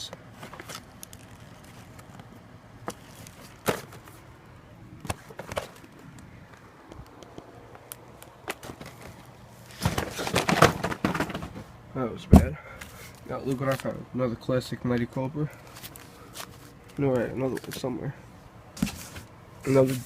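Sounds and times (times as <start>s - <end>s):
clattering and rustling: 8.5s - 11.7s
boxes knocking: 9.8s - 11.7s.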